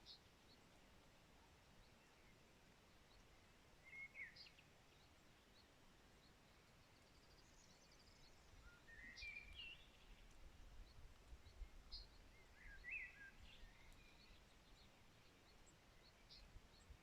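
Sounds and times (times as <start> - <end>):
soft background hiss: 0.0 - 17.0
songbirds chirping: 0.0 - 17.0.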